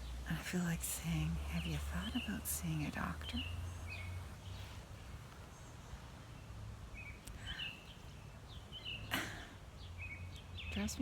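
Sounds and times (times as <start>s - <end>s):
low outdoor hum: 0.0s - 11.0s
small birds chirping: 0.0s - 11.0s.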